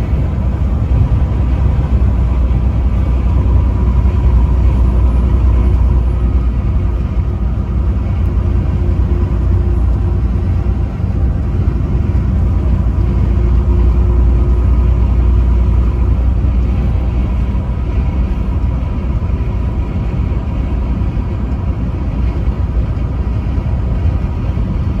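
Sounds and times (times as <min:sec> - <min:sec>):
truck engine and road noise: 0:00.0 - 0:25.0.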